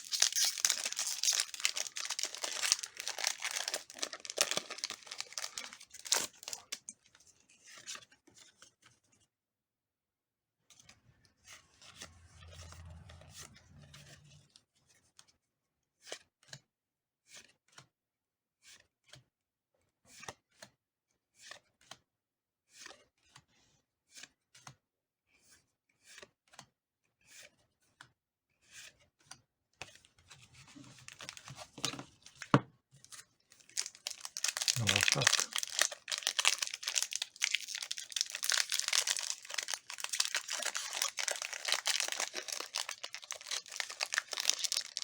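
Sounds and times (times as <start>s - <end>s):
wrapper crinkling and tearing: 0.0s - 6.9s, 30.6s - 32.5s, 33.5s - 45.0s.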